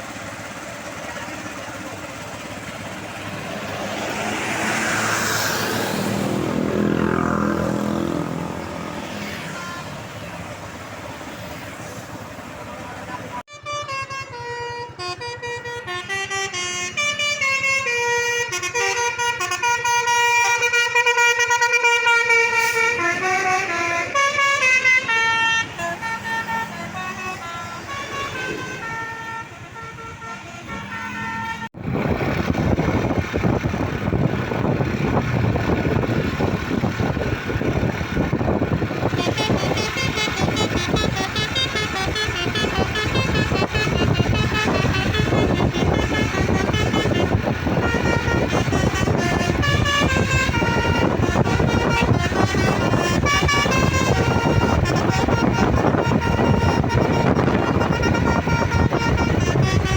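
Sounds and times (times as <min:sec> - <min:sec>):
steady noise of vehicles: 0:00.0 - 0:59.9
musical air horns on a bus: 0:13.4 - 0:31.8, 0:37.8 - 0:59.9.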